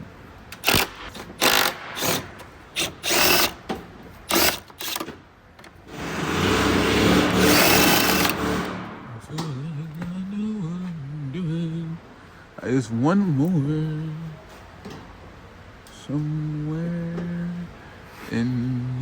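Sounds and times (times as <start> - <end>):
power drill bursts: 0.6 - 3.6, 4.3 - 5.1, 5.9 - 9.0.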